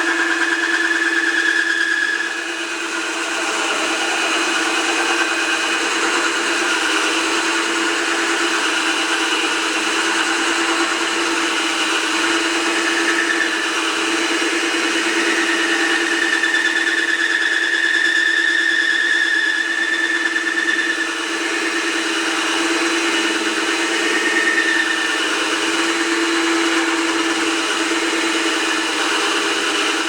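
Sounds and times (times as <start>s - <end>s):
power drill with hole saw grinding: 0.0s - 30.0s.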